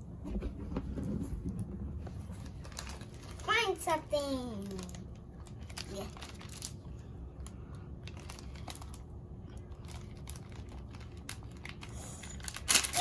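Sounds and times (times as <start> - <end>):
packaging crinkling: 2.3 - 3.6, 4.6 - 13.0.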